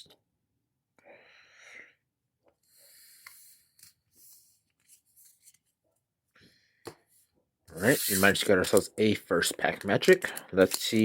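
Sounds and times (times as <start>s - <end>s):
cards rustling: 7.7s - 11.0s.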